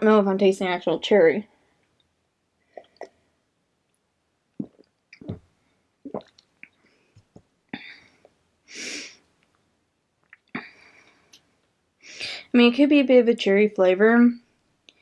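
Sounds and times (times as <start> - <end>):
lip smacks and tongue clicks: 10.2 - 10.5.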